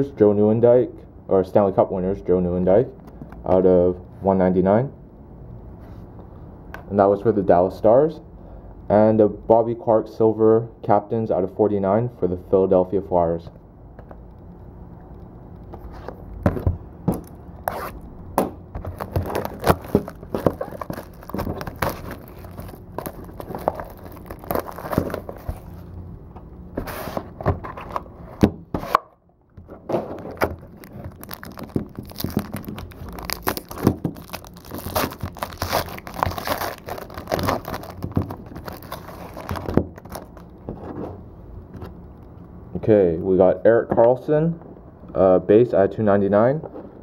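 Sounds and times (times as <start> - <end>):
cards tapping and scraping: 15.7 - 25.8
wrapper tearing and crinkling: 18.8 - 25.8, 30.2 - 40.5.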